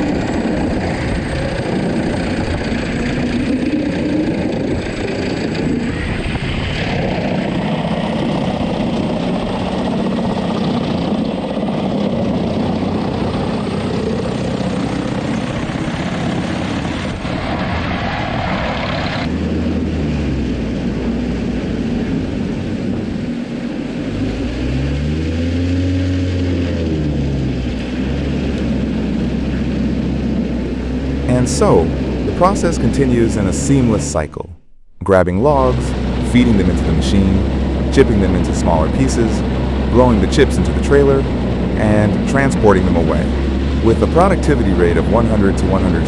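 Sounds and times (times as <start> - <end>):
wood chipper running under load: 24.0 - 34.2, 35.6 - 46.0.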